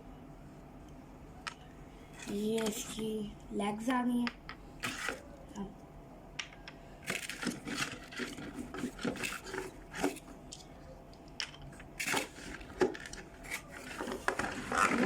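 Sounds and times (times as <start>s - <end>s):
packaging rustling: 7.0s - 10.3s, 12.0s - 15.0s.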